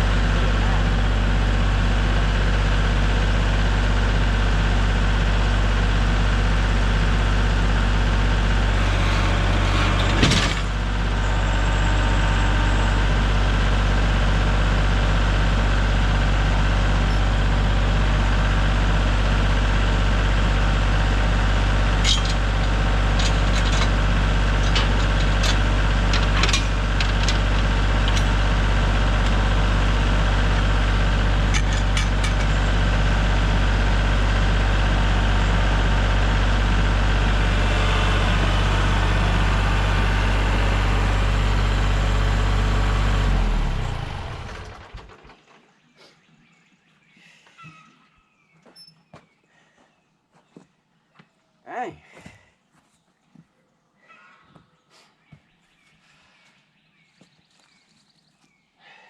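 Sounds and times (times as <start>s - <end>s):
engine running: 0.0s - 45.8s.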